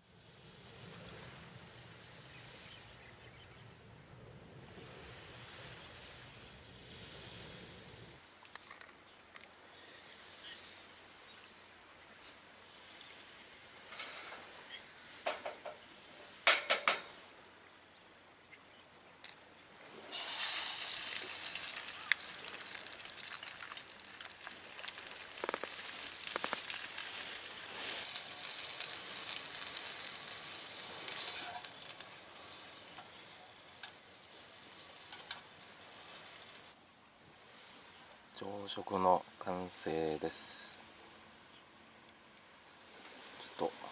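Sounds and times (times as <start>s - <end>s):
food sizzling in a pan: 20.1s - 36.8s.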